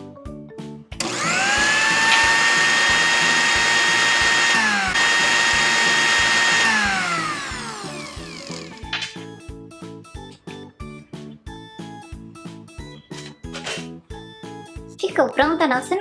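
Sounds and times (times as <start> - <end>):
small electric motor whirring: 1.0 - 8.9.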